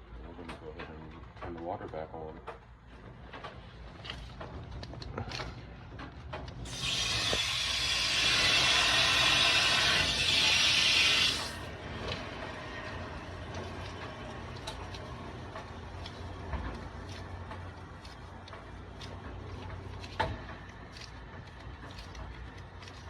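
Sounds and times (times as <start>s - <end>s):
water hissing through valve: 6.6s - 11.7s.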